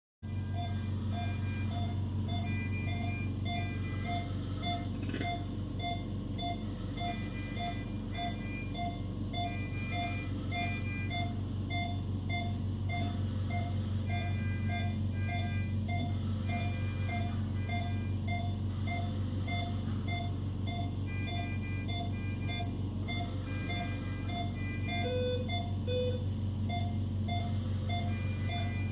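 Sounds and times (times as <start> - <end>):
equipment hum: 0.2 - 28.9
higher alarm beeps: 0.3 - 28.9
patient monitor low beep: 0.3 - 28.9.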